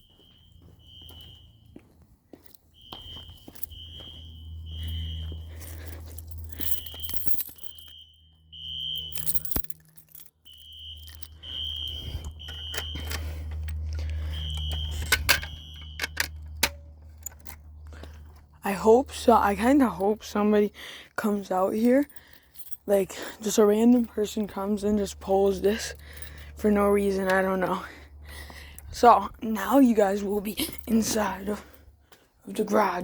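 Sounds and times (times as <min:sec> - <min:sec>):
fire alarm horn beeping: 0:00.0 - 0:02.0, 0:02.6 - 0:16.7.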